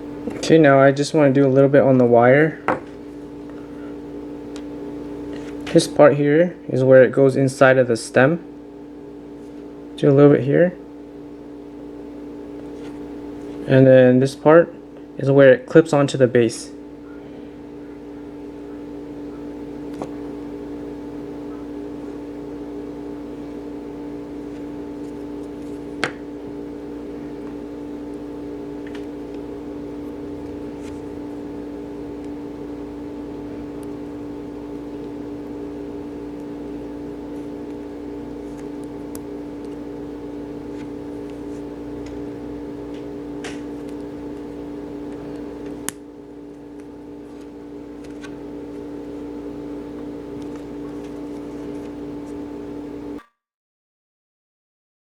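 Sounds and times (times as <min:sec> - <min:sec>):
low machine hum: 0:00.0 - 0:53.2.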